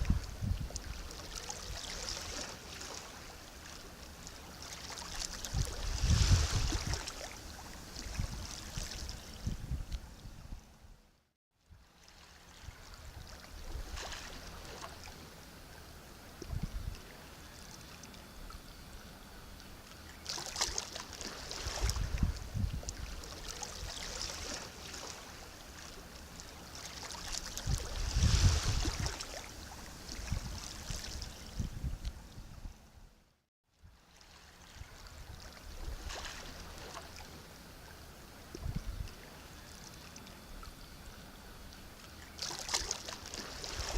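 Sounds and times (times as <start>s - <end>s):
sea waves breaking on shore: 0.0s - 9.4s, 11.8s - 15.6s, 20.1s - 31.5s, 34.0s - 37.6s, 42.2s - 43.9s.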